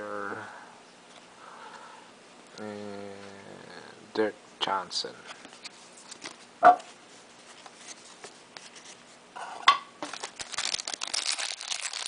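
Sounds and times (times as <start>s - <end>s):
trading cards flipped through: 5.4s - 9.0s.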